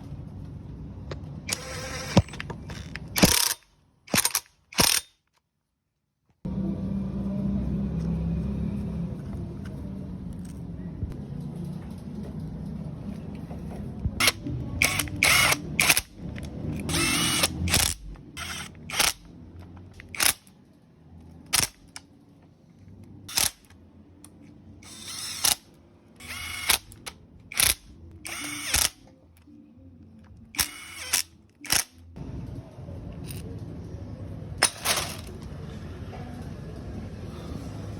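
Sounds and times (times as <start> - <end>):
power tool whirring: 1.5 - 5.1, 14.2 - 19.3, 23.3 - 23.7, 24.8 - 29.0, 30.5 - 31.9.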